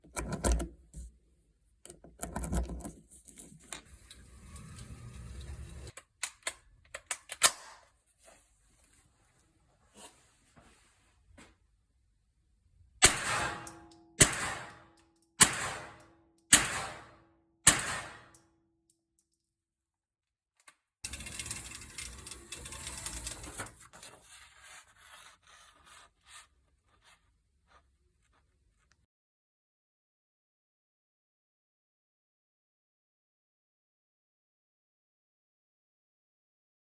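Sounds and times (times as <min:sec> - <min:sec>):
handling noise rubbing and scraping: 0:02.2 - 0:05.9, 0:21.1 - 0:28.9
rifle shots: 0:13.0 - 0:14.8, 0:15.4 - 0:18.3.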